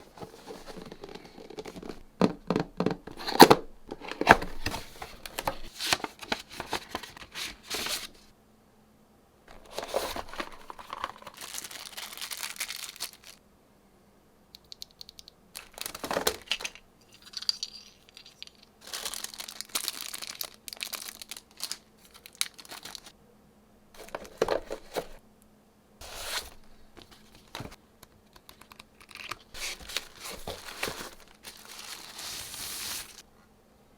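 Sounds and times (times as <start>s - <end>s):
packaging tearing and crinkling: 9.6s - 13.4s, 15.6s - 17.5s, 18.8s - 23.1s, 28.4s - 33.2s.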